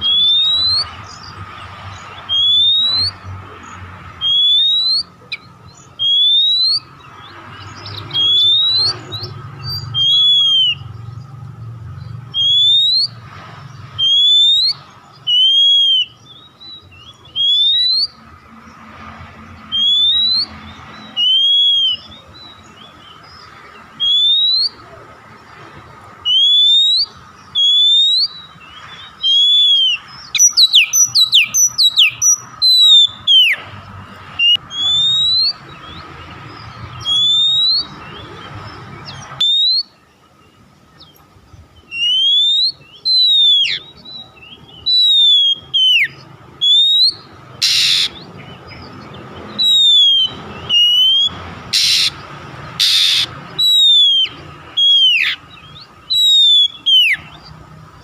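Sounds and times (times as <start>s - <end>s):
bird singing whistled notes: 0.0s - 18.8s, 19.4s - 25.0s, 26.2s - 33.7s, 34.4s - 57.6s.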